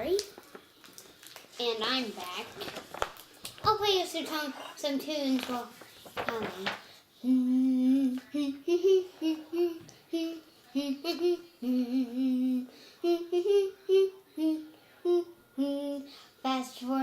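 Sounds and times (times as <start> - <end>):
child humming a tune: 7.2 - 16.1.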